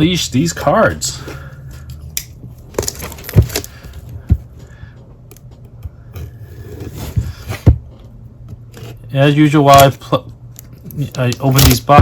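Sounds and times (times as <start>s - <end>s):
cardboard box scraping and rustling: 6.4s - 7.7s.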